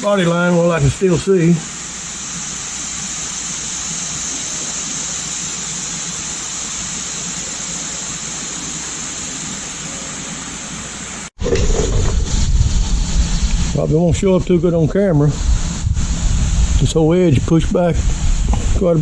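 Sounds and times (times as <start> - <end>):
shop background hiss: 0.0 - 11.4.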